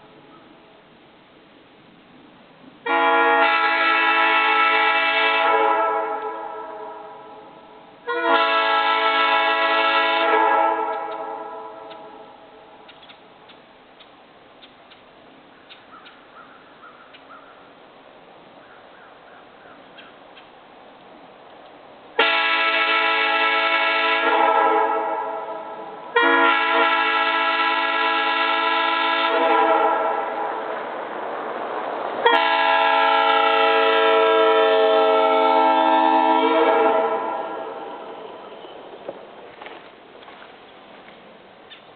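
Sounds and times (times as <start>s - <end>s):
train horn chord blasts: 2.8s - 12.4s, 22.2s - 30.7s, 32.2s - 38.9s
faint clicks: 12.8s - 16.2s.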